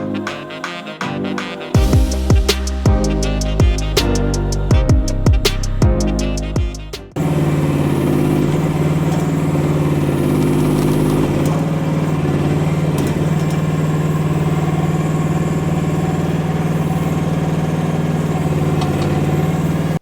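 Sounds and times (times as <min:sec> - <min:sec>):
small excavator engine running: 0:07.2 - 0:20.0.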